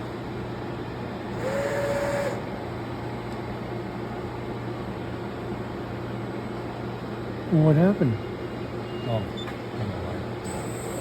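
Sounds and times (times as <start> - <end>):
low machine hum: 0.0 - 9.0
motor whine with rushing sound: 1.3 - 2.5.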